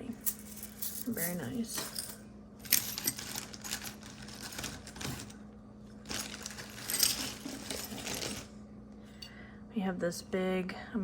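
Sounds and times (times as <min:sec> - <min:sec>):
jewelry beads clinking: 0:00.2 - 0:05.4, 0:06.0 - 0:08.5.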